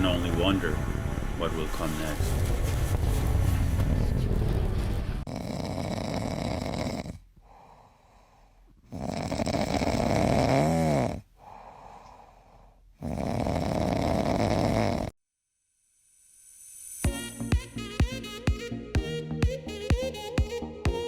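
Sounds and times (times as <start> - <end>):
low rumble: 0.0 - 5.3
dog snoring: 5.3 - 7.9, 8.8 - 12.3, 13.0 - 15.2.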